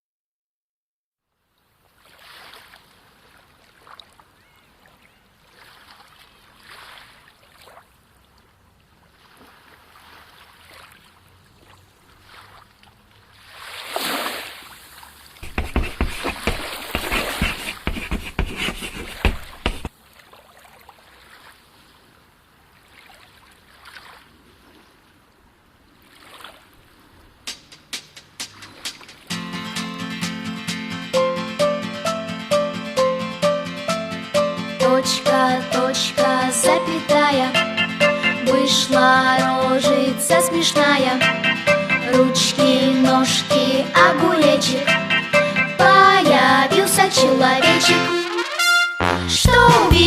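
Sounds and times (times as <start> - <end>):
soft waves washing in: 9.0 - 15.4
loud surge of splashing water: 13.4 - 15.0.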